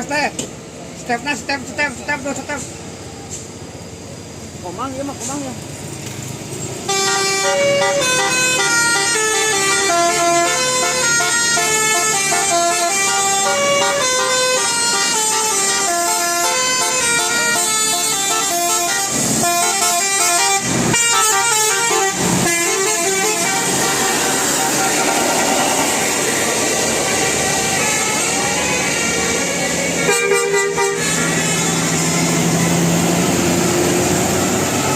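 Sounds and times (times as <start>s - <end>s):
multi-trumpet bus horn melody: 6.8s - 32.8s.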